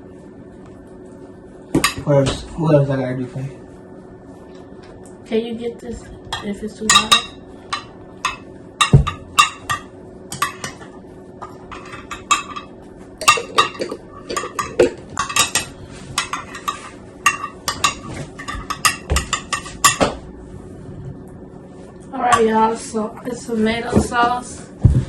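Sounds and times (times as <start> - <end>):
metal spoon scraping a dish: 15.5 - 18.2.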